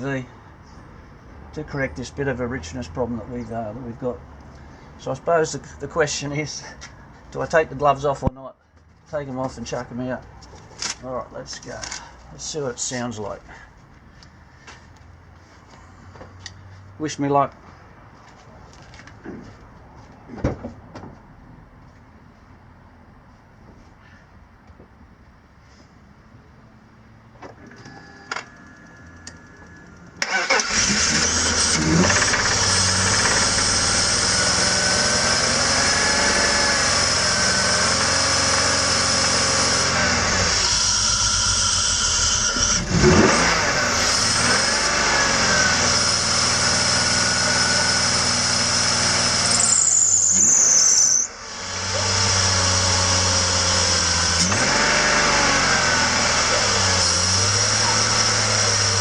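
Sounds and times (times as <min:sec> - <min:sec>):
car engine starting and running: 0:27.0 - 0:59.0.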